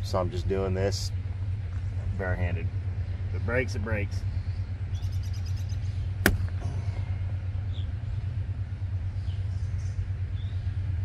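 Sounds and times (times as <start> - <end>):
steady low hum: 0.0 - 11.0
plastic trim snapping: 6.2 - 6.6.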